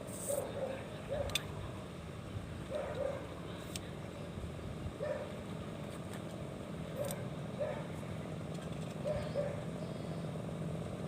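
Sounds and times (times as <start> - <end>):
steady low hum: 0.0 - 11.0
dog barking: 0.4 - 1.3, 2.7 - 3.3, 5.0 - 5.3, 7.0 - 7.9, 9.0 - 9.6.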